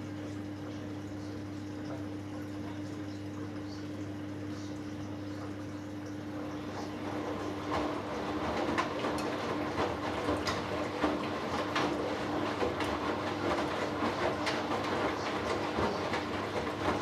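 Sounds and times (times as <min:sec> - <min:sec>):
washing machine spinning: 0:04.2 - 0:17.0.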